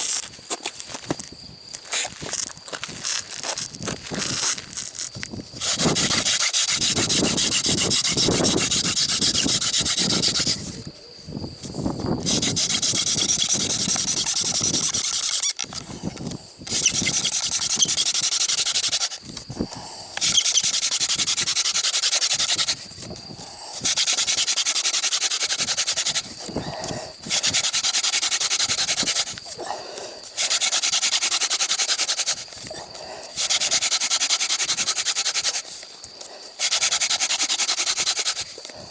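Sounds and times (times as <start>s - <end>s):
wooden spindle rubbing on hearth board: 5.6s - 10.9s, 12.2s - 15.6s, 16.7s - 19.2s, 20.2s - 23.1s, 23.8s - 26.6s, 27.2s - 29.6s, 30.4s - 32.6s, 33.4s - 35.8s, 36.6s - 38.6s.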